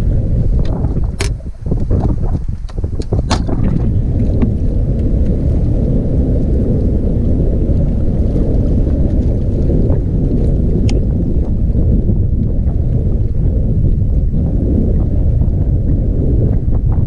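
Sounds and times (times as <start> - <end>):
boat running across water: 0.0 - 17.0.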